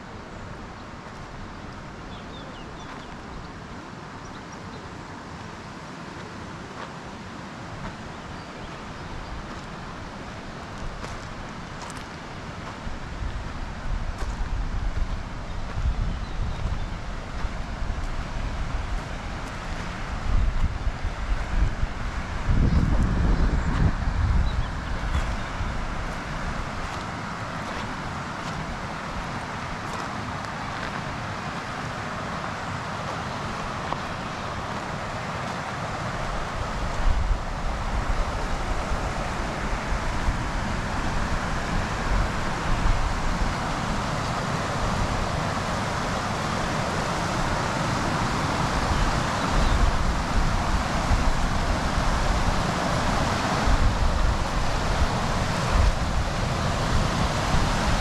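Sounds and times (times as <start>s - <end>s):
steady rushing noise: 0.0s - 58.0s
wind buffeting microphone: 9.0s - 30.1s, 35.8s - 58.0s.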